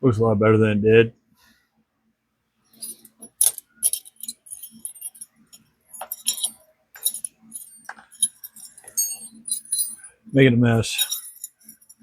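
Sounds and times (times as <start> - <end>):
hex keys clinking together: 2.8 - 10.1, 10.9 - 12.0.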